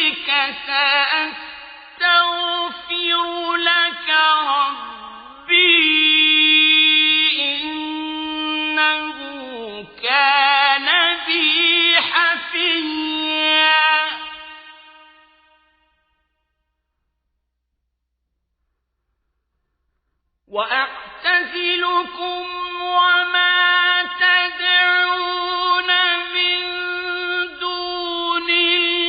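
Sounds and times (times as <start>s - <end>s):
man chanting melodically: 20.6s - 29.0s.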